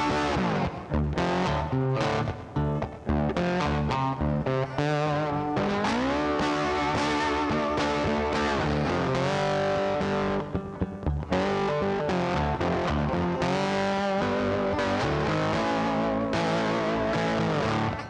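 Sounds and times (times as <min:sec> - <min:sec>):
distorted electric guitar music: 0:00.0 - 0:18.0.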